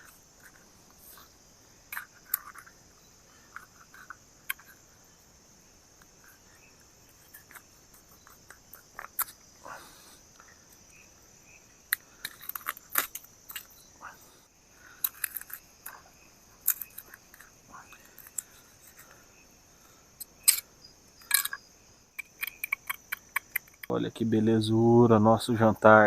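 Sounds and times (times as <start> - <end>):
insect chorus trilling: 0.0 - 26.0
fish being cleaned clicks and scrapes: 1.9 - 2.8, 15.0 - 15.9.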